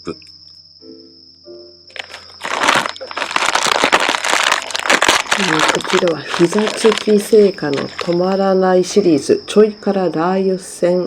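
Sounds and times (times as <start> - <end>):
cricket chirring: 0.0 - 11.0
plastic snack packet crinkling: 1.9 - 8.4.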